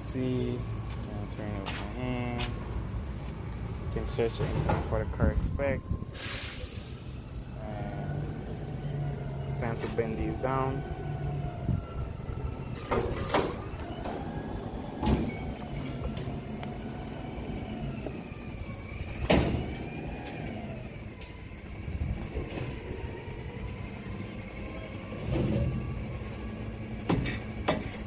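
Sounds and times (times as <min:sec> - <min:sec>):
sharp metal knocks: 0:27.1 - 0:28.0.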